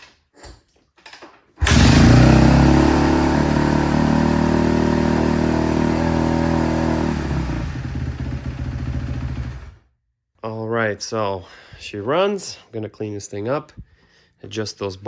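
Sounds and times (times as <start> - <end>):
dirt bike engine idling: 1.7 - 9.8.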